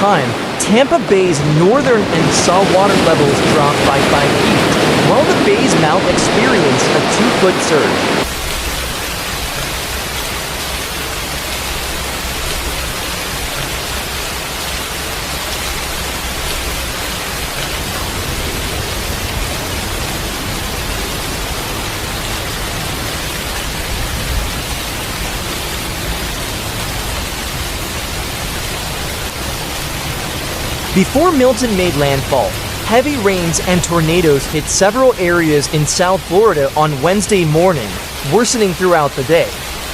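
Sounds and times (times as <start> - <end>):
hurricane wind: 0.0 - 10.2, 11.7 - 39.9
heavy rain: 0.0 - 39.9.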